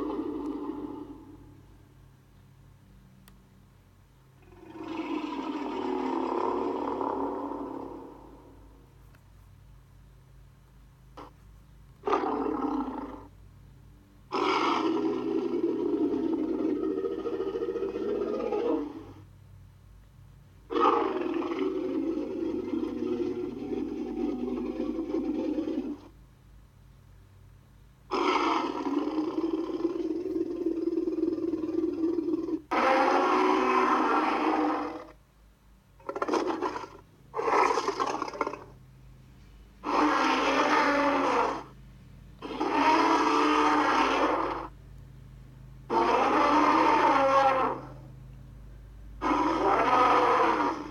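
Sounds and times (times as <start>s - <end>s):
monster roar: 28.1s - 35.2s, 39.8s - 41.7s, 42.4s - 44.7s, 45.9s - 48.0s, 49.2s - 50.9s.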